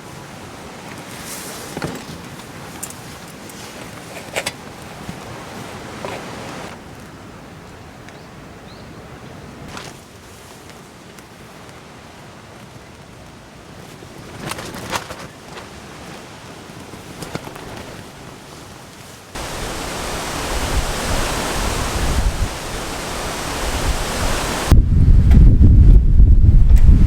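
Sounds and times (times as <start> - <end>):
strong wind buffeting microphone: 19.4 - 27.0.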